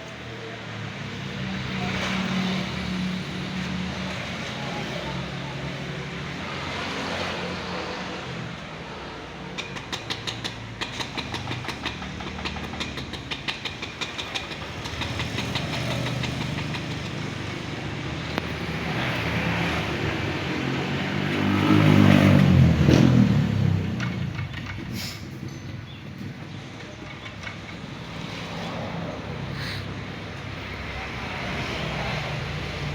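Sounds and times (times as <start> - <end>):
quick regular clicks: 9.5 - 17.6
vehicle engine running: 10.0 - 32.9
vehicle passing close: 14.6 - 32.9.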